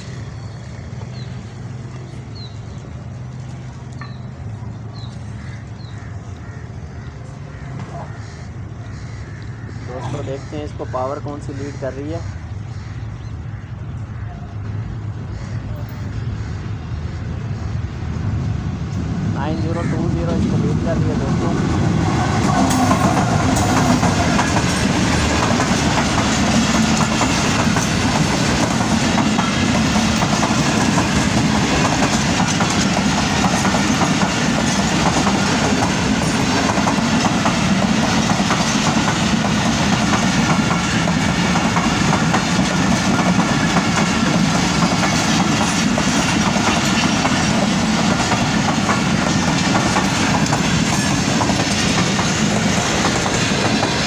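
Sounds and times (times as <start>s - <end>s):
train wheels clattering over rails: 21.3s - 54.0s.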